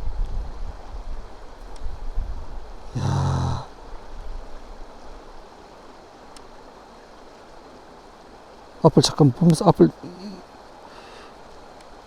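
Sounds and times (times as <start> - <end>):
mountain stream rushing: 0.0 - 12.0
man grunting: 3.0 - 3.7.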